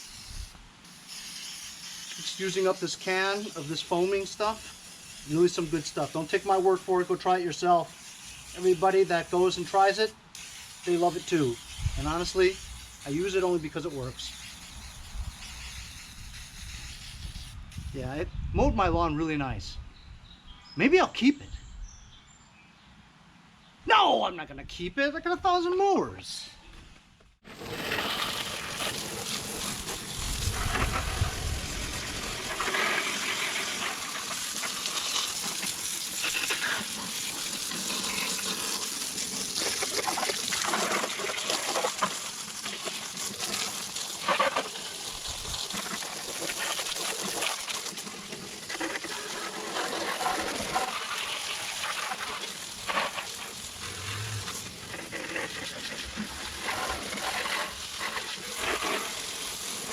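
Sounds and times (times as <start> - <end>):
hose spraying water on machine: 0.0 - 17.9, 27.6 - 59.9.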